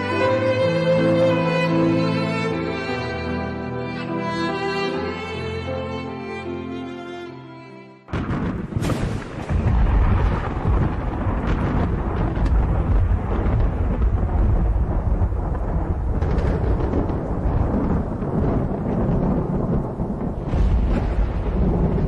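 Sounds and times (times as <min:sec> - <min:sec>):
wind and rain rumble: 0:08.1 - 0:22.0
sharp crack: 0:08.2 - 0:22.0.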